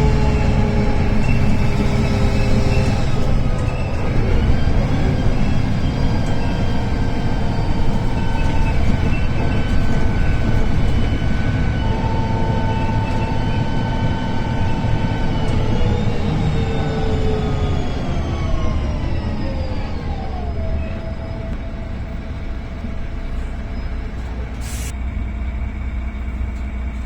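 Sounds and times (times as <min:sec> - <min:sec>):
turbocharger whistle: 0:00.0 - 0:21.6
bus diesel engine rumble: 0:00.0 - 0:27.0.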